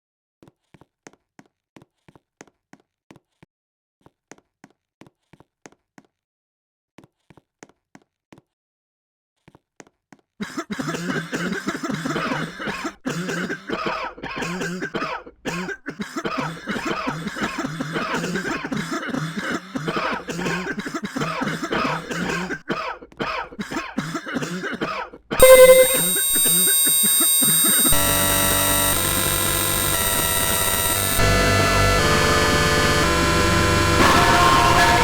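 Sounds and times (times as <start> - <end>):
person coughing: 10.4 - 27.9.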